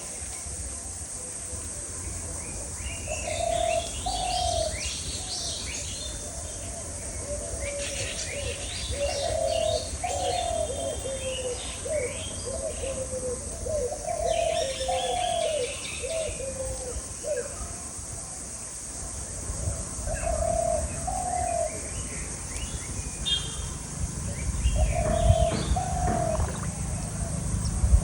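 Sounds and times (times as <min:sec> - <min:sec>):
doves cooing: 0:03.1 - 0:05.3, 0:06.1 - 0:17.8, 0:20.1 - 0:21.9, 0:24.3 - 0:28.0
small birds chirping: 0:20.9 - 0:28.0.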